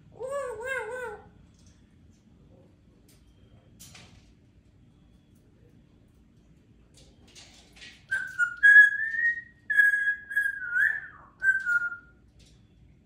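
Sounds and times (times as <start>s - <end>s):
parrot whistling: 8.1s - 12.1s.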